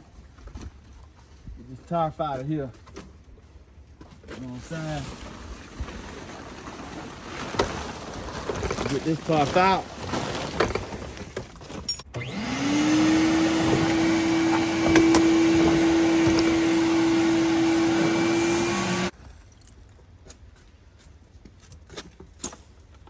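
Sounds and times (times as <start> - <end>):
handling noises: 2.4 - 23.0
shop vacuum motor running: 12.1 - 19.1.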